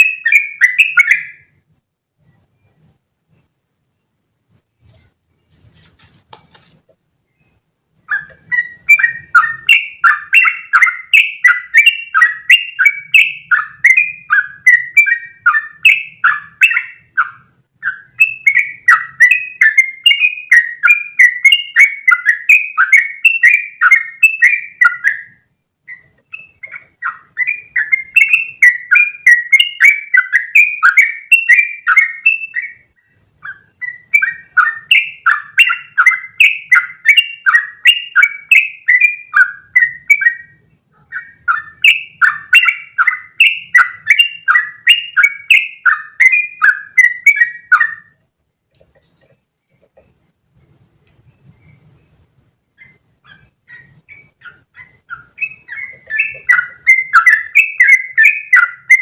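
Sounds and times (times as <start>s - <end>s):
bird singing bubbly notes: 7.2s - 48.2s, 53.6s - 59.0s.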